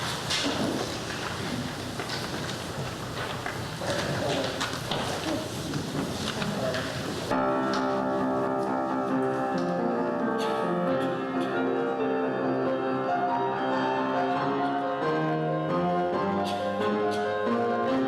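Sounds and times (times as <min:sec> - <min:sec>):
keyboard chords: 0:07.3 - 0:18.0.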